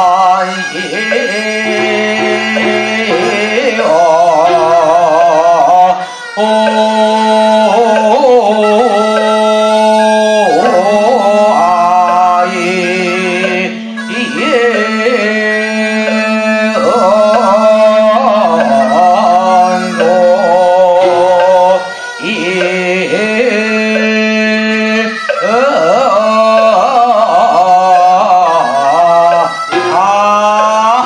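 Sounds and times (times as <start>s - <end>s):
ornamented sliding melody: 0.0s - 31.0s
steady low drone: 1.6s - 5.8s.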